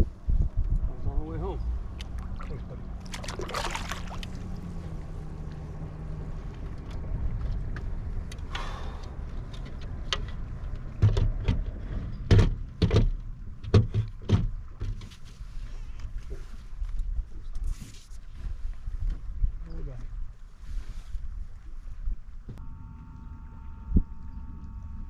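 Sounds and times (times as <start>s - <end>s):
low steady hum: 0.0s - 9.5s, 22.0s - 25.0s
knocks and thumps on kayak: 11.0s - 15.2s.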